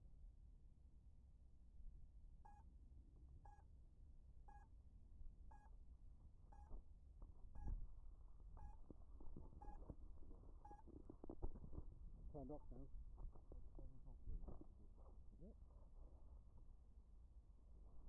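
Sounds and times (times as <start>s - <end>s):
faint electronic beeps: 2.5s - 2.7s, 3.4s - 3.7s, 4.4s - 4.8s, 5.4s - 5.8s, 6.4s - 6.8s, 7.5s - 7.9s, 8.5s - 10.0s, 10.6s - 11.0s.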